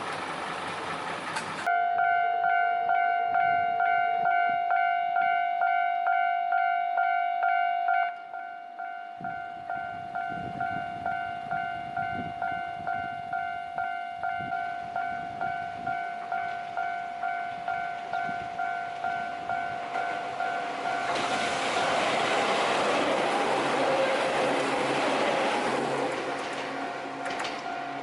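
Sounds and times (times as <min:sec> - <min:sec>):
train arriving: 0:00.0 - 0:28.0
level crossing alarm bell ringing: 0:01.7 - 0:21.6, 0:26.6 - 0:28.0.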